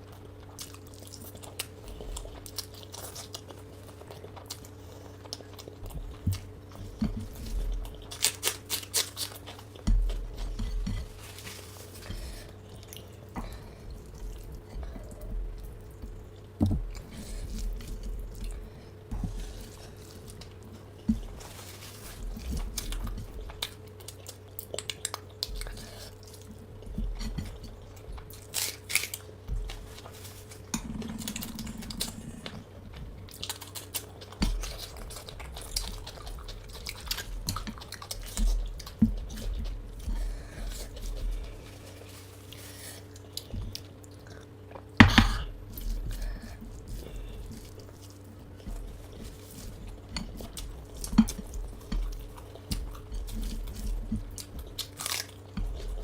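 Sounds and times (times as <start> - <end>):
person chewing and crunching: 0.0 - 56.0
steady low hum: 0.0 - 56.0.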